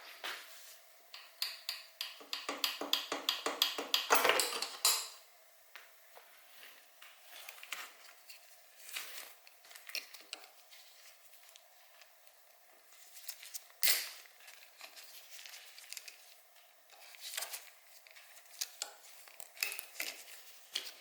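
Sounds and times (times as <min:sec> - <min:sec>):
metal tools clicking and clinking: 0:04.0 - 0:05.2.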